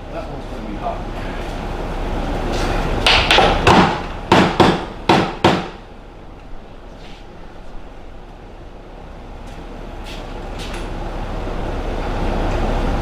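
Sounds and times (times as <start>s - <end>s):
hammer strikes on metal: 3.1s - 5.8s.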